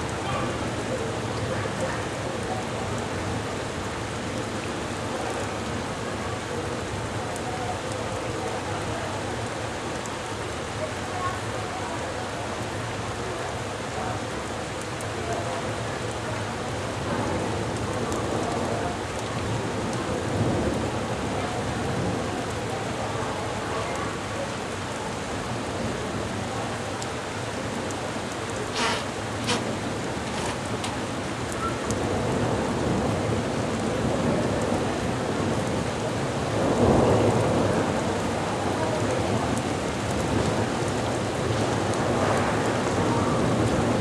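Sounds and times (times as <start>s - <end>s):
heavy rain pouring: 0.0s - 44.0s
low rumble of thunder: 31.4s - 44.0s.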